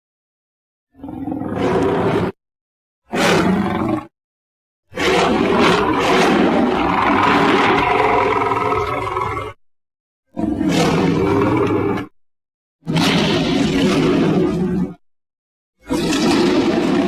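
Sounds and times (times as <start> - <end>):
dinosaur roaring: 1.0 - 2.4, 3.1 - 4.1, 5.0 - 9.6, 10.4 - 12.1, 15.8 - 17.0.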